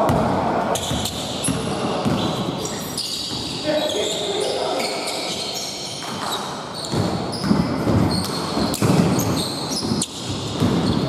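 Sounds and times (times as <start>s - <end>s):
shoe squeaks: 0.8s - 11.0s
ball bouncing: 6.0s - 11.0s.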